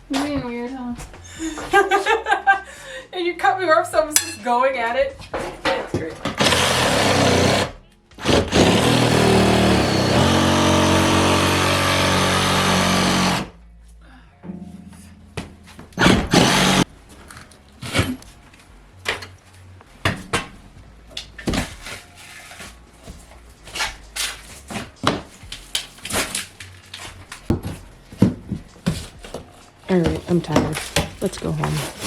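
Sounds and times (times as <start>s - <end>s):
power tool running: 6.3s - 13.6s, 16.0s - 16.9s.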